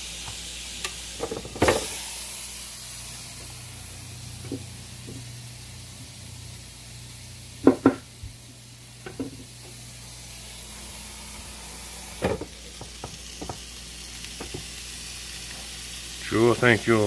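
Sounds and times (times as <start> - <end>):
steak sizzling: 0.0 - 17.0.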